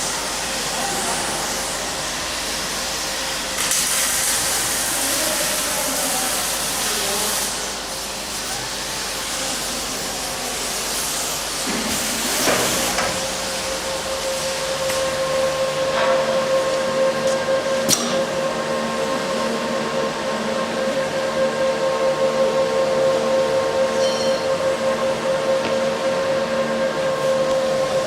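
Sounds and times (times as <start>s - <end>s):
welding arc hissing and crackling: 0.0s - 19.8s
steady hum: 0.0s - 28.0s.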